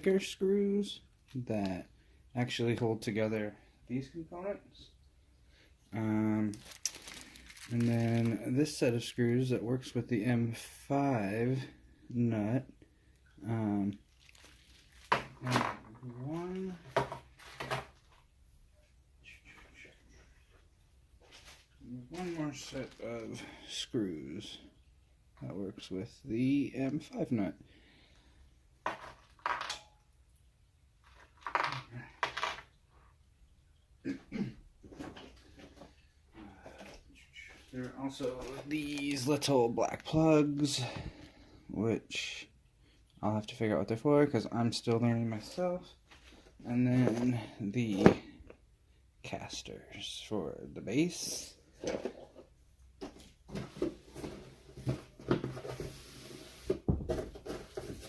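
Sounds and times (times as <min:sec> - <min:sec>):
metal parts knocking and clinking: 0:28.9 - 0:30.0.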